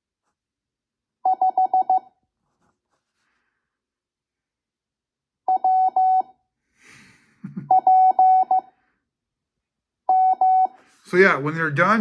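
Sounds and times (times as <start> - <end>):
morse code beeps: 1.3 - 2.1, 5.5 - 6.3, 7.7 - 8.7, 10.1 - 10.8.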